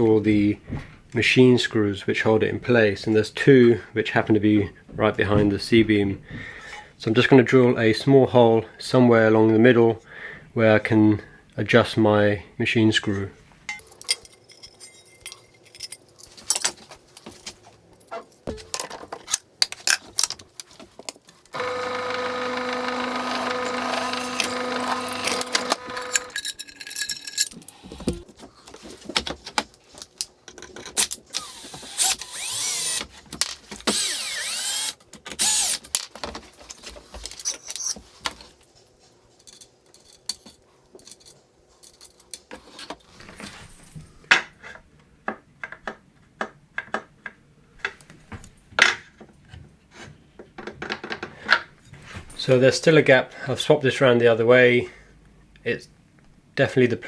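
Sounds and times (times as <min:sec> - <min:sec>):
tools and metal parts clinking: 0:13.7 - 0:43.1
power drill drilling: 0:21.5 - 0:26.4, 0:31.2 - 0:33.2, 0:33.8 - 0:35.8.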